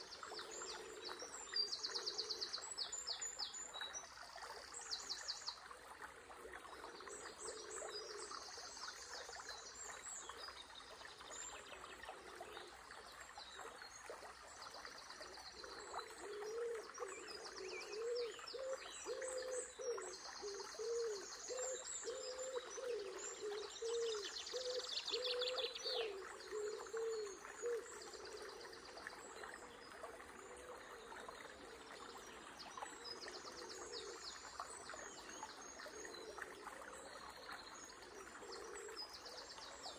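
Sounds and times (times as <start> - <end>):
running water hiss: 6.9 - 39.9
low cooing call: 16.1 - 29.0.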